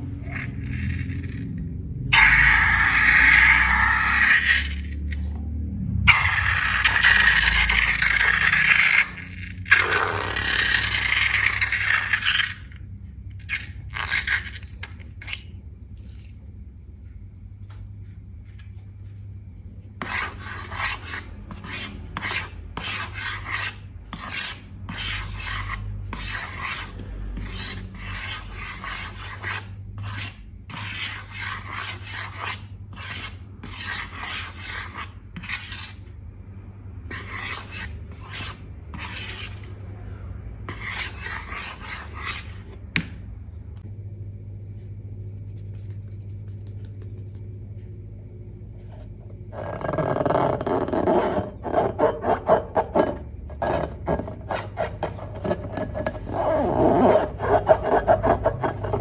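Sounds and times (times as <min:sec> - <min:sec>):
hands rubbing slime: 0:45.3 - 0:47.5.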